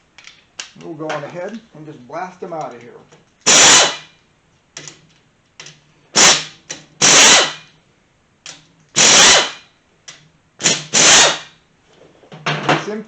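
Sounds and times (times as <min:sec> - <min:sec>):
air impact wrench hammering: 0:03.4 - 0:04.2, 0:06.2 - 0:07.8, 0:09.0 - 0:09.7, 0:10.6 - 0:11.6.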